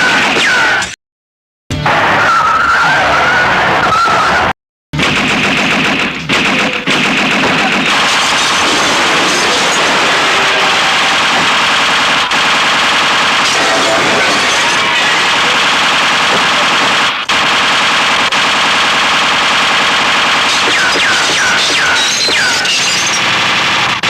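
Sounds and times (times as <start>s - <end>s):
machine-gun bursts: 5.0s - 24.0s.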